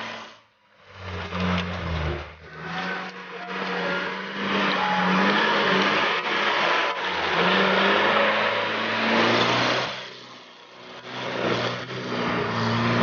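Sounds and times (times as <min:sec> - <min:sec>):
engine revving under load: 0:00.0 - 0:13.0.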